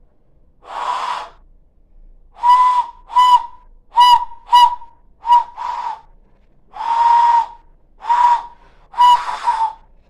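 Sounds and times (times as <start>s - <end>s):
hand whistle hoots: 2.4s - 6.1s, 6.8s - 9.9s.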